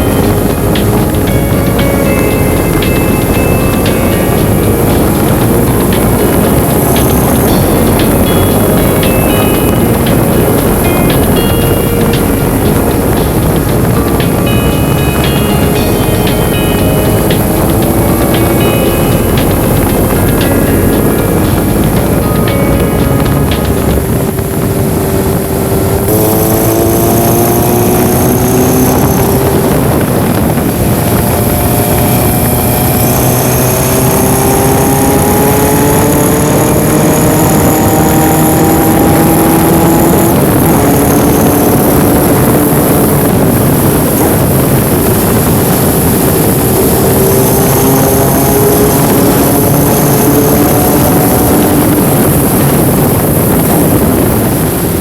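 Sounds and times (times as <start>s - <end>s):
motorcycle engine running: 0.0s - 55.0s.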